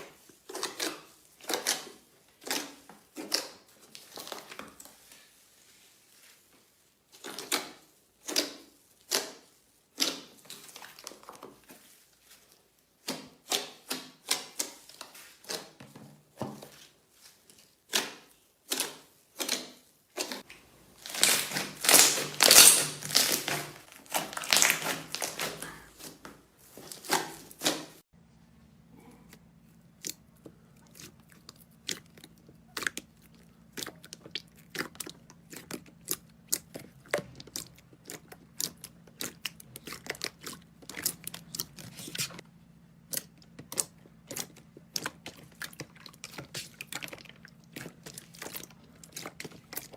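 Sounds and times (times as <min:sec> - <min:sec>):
slime crackling and popping: 0:21.0 - 0:25.8.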